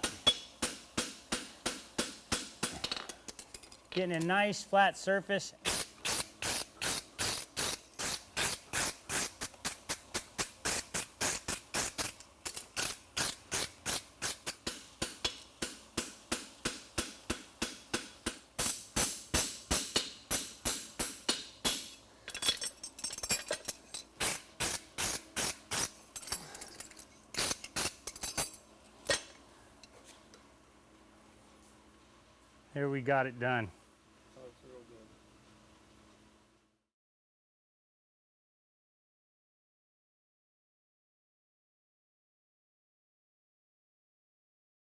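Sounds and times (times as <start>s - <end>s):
hammer striking horseshoe on anvil: 0.0s - 3.1s, 14.6s - 22.6s.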